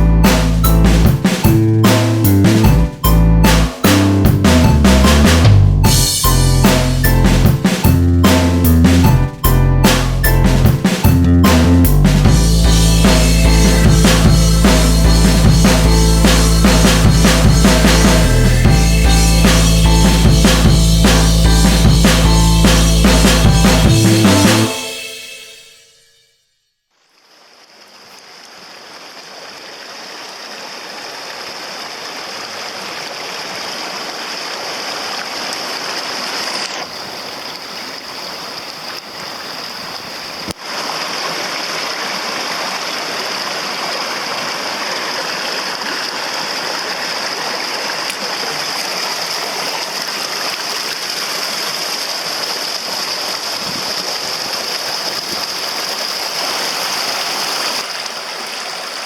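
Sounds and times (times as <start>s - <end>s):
stream rushing over rocks: 27.3s - 59.0s.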